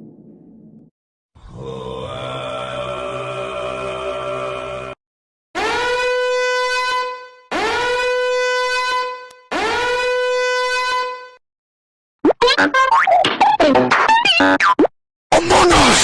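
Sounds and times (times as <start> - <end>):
horn blasts: 5.6 - 11.4.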